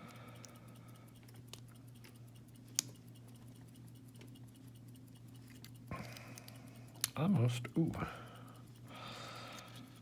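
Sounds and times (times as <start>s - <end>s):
steady low hum: 0.0s - 10.0s
small metal parts clicking: 1.2s - 7.3s.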